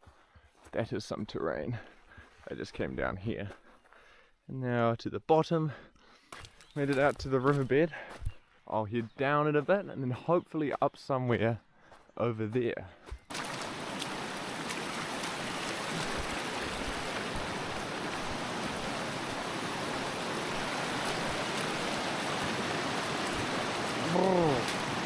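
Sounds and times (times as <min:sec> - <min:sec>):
river water rushing over rocks: 0:13.3 - 0:25.0
person exclaiming: 0:24.0 - 0:24.8.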